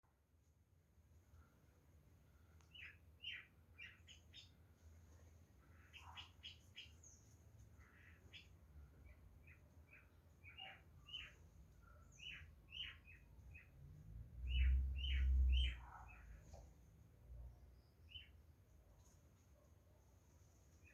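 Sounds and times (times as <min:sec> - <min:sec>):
birds chirping: 0:02.7 - 0:04.6, 0:05.6 - 0:16.7, 0:17.8 - 0:18.4.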